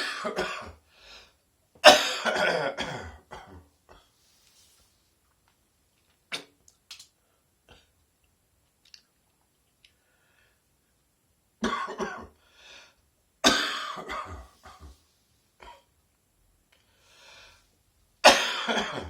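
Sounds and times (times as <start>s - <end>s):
person coughing: 0.0s - 0.8s, 1.8s - 3.7s, 11.6s - 12.4s, 13.4s - 15.0s, 18.2s - 19.0s.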